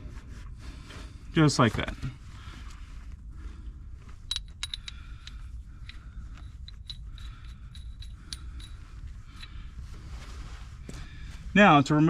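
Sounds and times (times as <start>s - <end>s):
low steady rumble: 0.0s - 12.0s
light metallic clicks and clinks: 4.2s - 9.7s.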